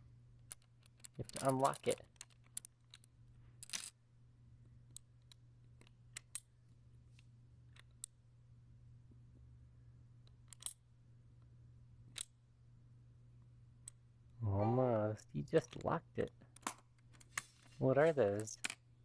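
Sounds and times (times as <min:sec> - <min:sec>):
faint steady hum: 0:00.0 - 0:19.0
lock clicks and snaps: 0:10.2 - 0:10.8, 0:12.1 - 0:12.3.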